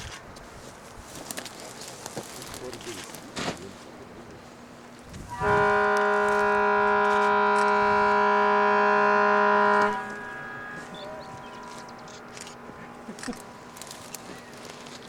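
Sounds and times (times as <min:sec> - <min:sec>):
long steady horn blast: 0:05.2 - 0:15.0.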